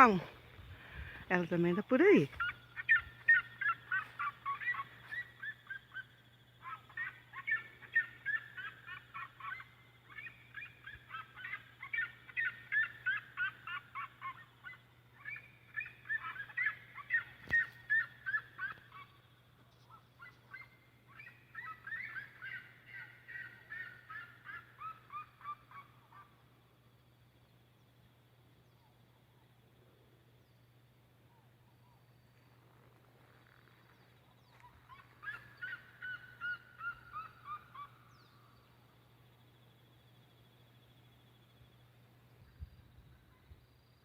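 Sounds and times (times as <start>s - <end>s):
bird yelping calls: 1.0s - 19.2s, 19.8s - 26.4s, 33.2s - 38.7s
faint low hum: 14.2s - 44.0s.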